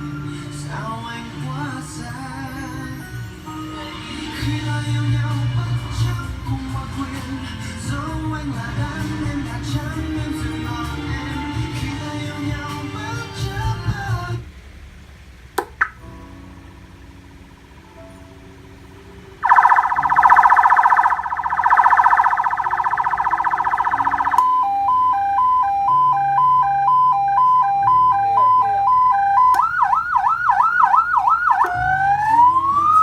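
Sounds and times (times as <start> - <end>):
electronic ambulance siren: 19.4 - 33.0.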